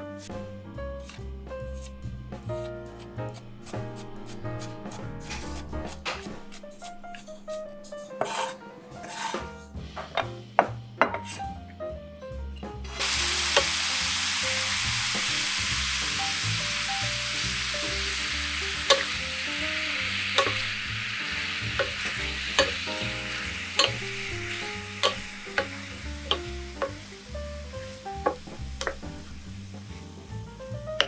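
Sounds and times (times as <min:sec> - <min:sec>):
chicken sizzling in a pan: 0:12.9 - 0:31.0
utensil clicking against pan: 0:18.8 - 0:19.2, 0:20.3 - 0:20.7, 0:21.7 - 0:23.2, 0:23.8 - 0:27.0.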